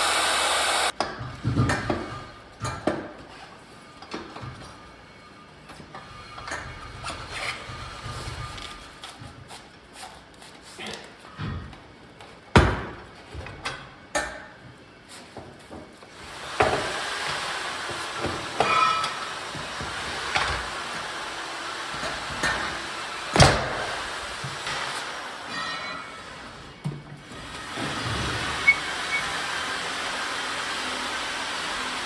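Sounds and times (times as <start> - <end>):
knocks and clanks: 16.5 - 29.3.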